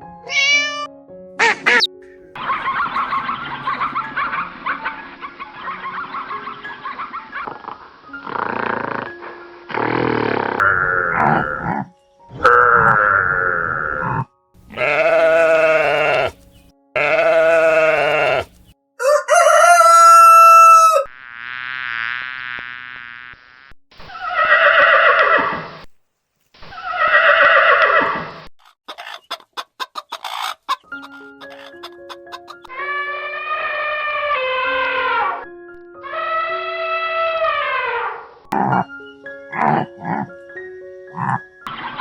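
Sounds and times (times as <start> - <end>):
farm animal calls: 0.3 - 18.7, 28.9 - 40.4, 41.1 - 42.0.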